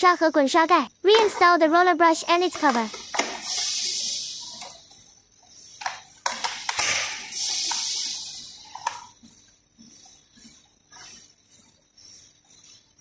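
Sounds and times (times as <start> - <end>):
plastic parts clicking: 5.8 - 8.0, 8.6 - 9.2.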